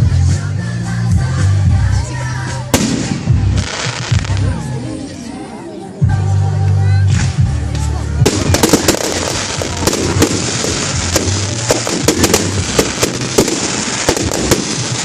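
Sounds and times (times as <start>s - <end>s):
fireworks bangs and crackles: 2.7s - 4.6s, 8.2s - 15.0s.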